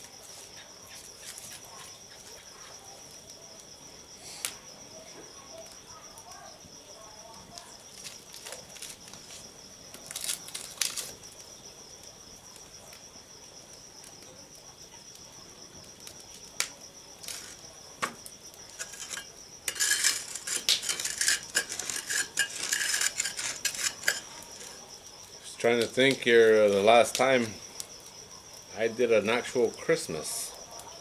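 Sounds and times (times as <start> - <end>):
campfire popping: 0.0 - 31.0
insects trilling: 0.0 - 31.0
crackling and clattering: 16.0 - 27.3.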